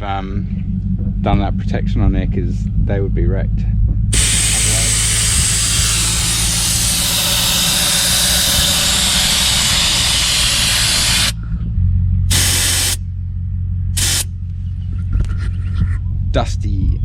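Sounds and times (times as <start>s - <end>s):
low steady hum: 0.0s - 17.0s
air hissing out of tyre valve: 4.2s - 11.4s, 12.3s - 13.0s, 14.0s - 14.3s.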